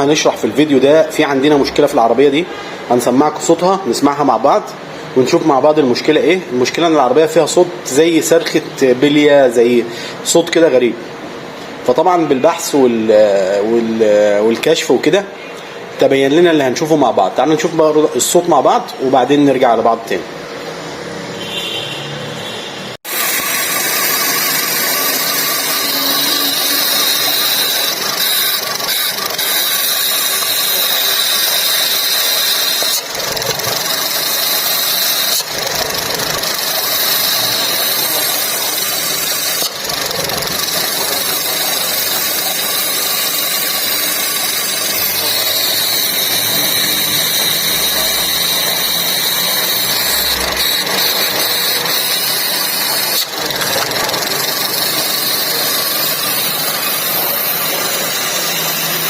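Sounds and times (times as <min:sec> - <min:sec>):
high-pitched shriek: 0:20.8 - 0:59.0
car engine idling: 0:23.2 - 0:32.0, 0:33.0 - 0:45.9, 0:49.2 - 0:59.0.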